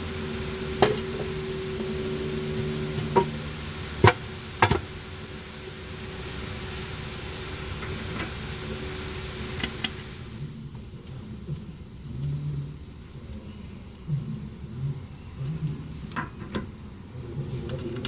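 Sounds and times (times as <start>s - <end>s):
steady mechanical hum: 0.0s - 18.0s.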